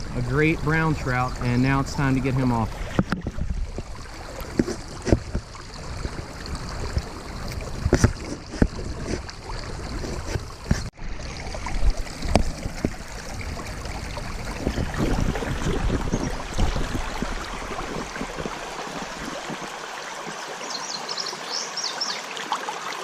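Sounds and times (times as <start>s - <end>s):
stream water running: 0.0s - 23.0s
knocks and splashy clicks: 2.5s - 10.9s, 11.6s - 20.4s.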